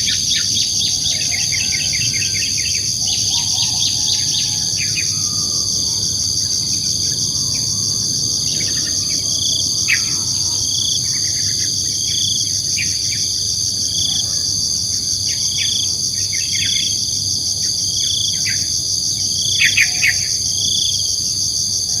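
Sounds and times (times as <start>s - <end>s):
crickets and insects trilling: 0.0s - 22.0s.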